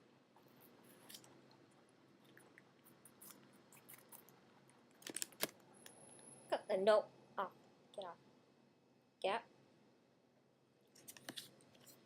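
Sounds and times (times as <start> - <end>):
rabbit chewing apple: 0.4 - 4.9.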